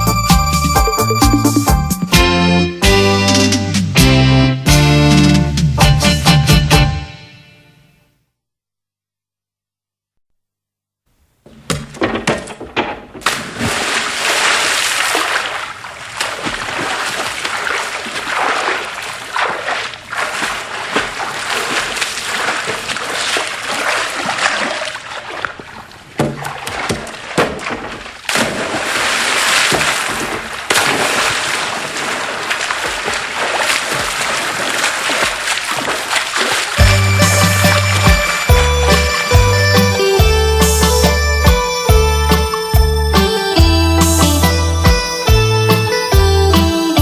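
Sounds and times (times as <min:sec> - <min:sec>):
electronic water sound effect: 0:30.8 - 0:43.0.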